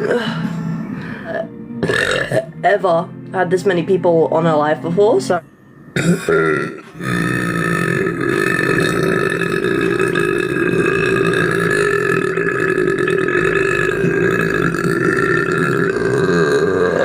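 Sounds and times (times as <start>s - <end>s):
long low burp: 1.2s - 2.6s, 5.9s - 17.0s.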